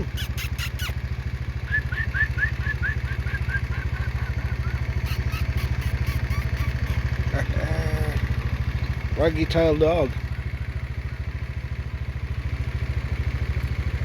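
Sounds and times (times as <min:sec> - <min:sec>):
motorcycle engine idling: 0:00.0 - 0:14.0
high chirps: 0:00.1 - 0:01.0, 0:01.7 - 0:07.1.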